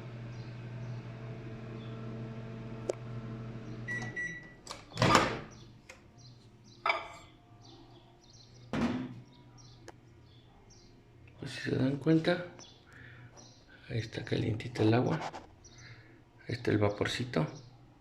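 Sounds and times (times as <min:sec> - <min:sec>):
microwave oven humming: 0:00.0 - 0:05.4.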